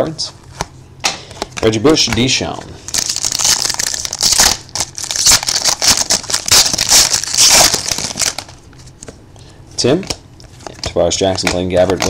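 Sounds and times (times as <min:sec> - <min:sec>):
card pack wrapper crinkling and tearing: 0:01.5 - 0:08.7, 0:10.0 - 0:12.0.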